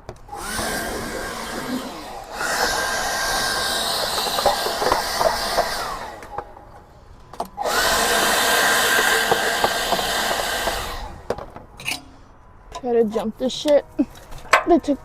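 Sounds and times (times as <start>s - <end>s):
electric blower running: 0.2s - 6.7s, 7.6s - 11.4s
blower winding down: 0.3s - 6.6s, 7.6s - 11.3s.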